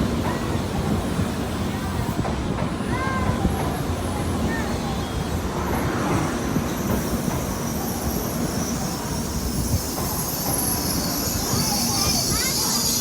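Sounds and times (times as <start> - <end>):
train wheels rumbling on track: 0.0 - 13.0
train hiss: 3.3 - 13.0.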